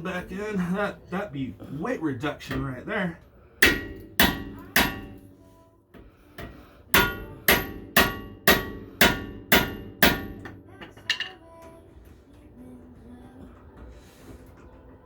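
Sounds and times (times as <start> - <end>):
hammer striking metal: 3.6 - 5.4, 6.0 - 11.4.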